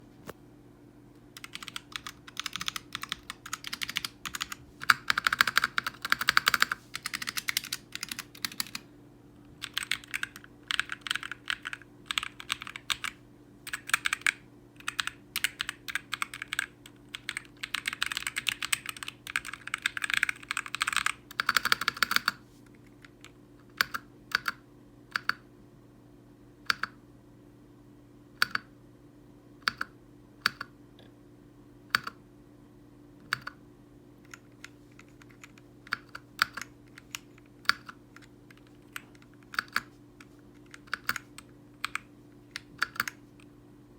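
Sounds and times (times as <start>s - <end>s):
mechanical keyboard typing: 1.4s - 8.8s, 9.6s - 22.4s, 23.0s - 25.4s, 26.7s - 27.0s, 28.4s - 28.7s, 29.6s - 30.7s, 31.9s - 32.2s, 33.2s - 33.6s, 34.2s - 43.2s.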